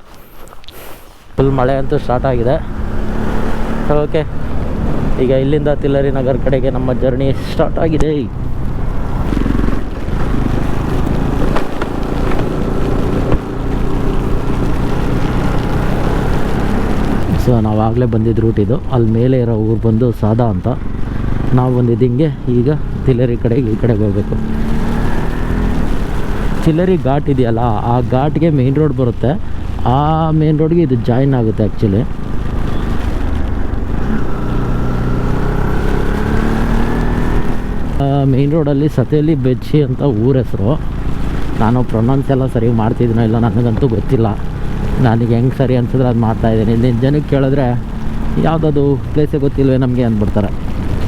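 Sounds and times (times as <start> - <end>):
motorcycle engine running: 1.4 - 28.8, 31.8 - 38.6, 39.8 - 51.0
wind rumble on microphone: 1.9 - 39.1, 39.9 - 51.0
wind noise on microphone: 47.7 - 51.0.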